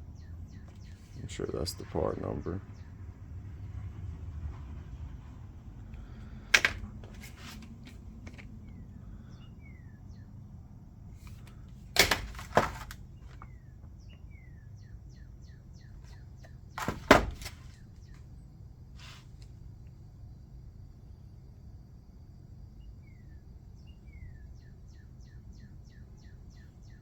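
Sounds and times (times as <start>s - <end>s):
screwdriver set being handled: 6.6s - 8.6s.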